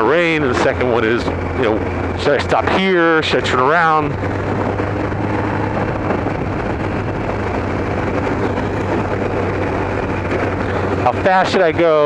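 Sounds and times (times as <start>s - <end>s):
motorcycle engine cruising: 0.0s - 12.0s
wind and road noise: 0.0s - 12.0s.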